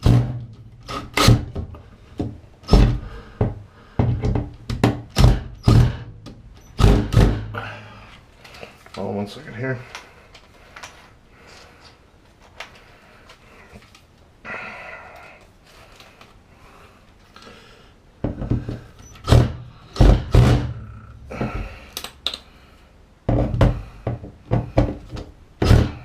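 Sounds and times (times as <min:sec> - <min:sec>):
heavy dull thuds and knocks: 0:00.0 - 0:07.7, 0:18.2 - 0:21.8, 0:23.2 - 0:26.0.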